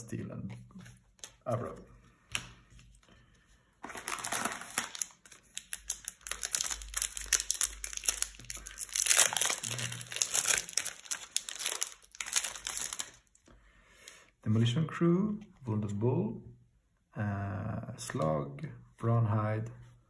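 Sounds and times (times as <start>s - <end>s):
foil wrapper crinkling and tearing: 3.8s - 13.4s.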